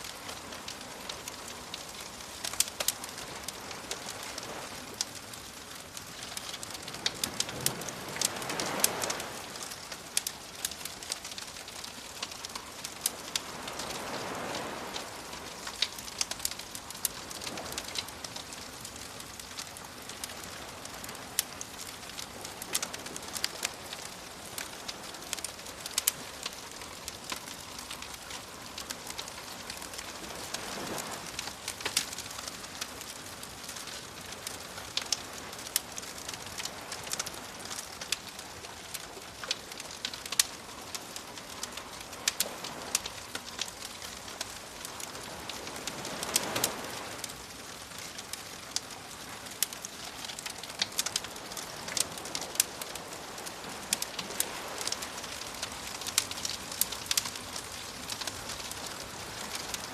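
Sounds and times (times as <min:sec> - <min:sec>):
campfire crackling and popping: 0:00.0 - 0:59.9
gentle waves: 0:00.0 - 0:59.9.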